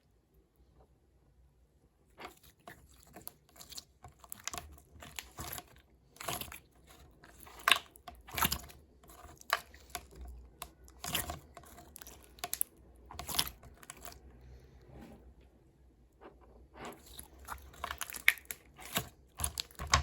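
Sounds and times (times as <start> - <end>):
crisp taps and crinkles from handling: 16.3 - 20.0.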